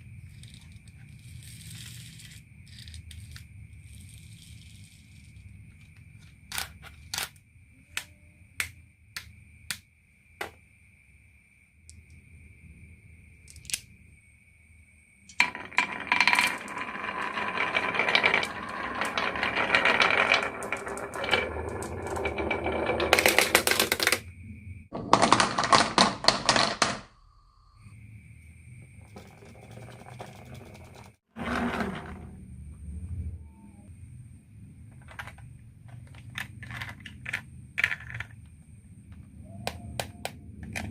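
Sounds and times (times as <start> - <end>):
marbles clattering down a track: 15.3 - 24.2, 25.0 - 27.0, 29.1 - 32.4, 35.0 - 38.4.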